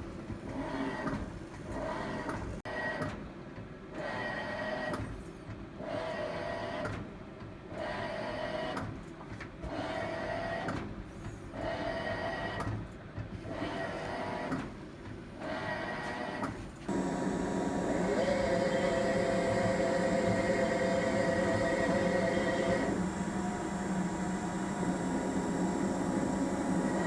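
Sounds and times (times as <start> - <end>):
washing machine running: 13.6 - 27.0.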